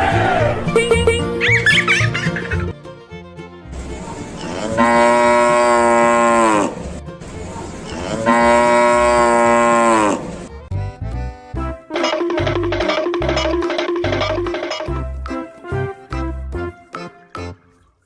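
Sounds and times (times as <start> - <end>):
light background music: 0.0 - 9.4, 10.3 - 18.0
cow mooing: 4.4 - 6.8, 7.9 - 10.3.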